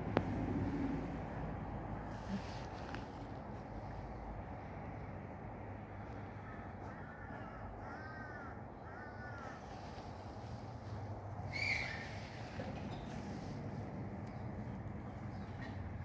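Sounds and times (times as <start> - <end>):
steady background noise: 0.0 - 16.0
bird calling: 11.5 - 13.1.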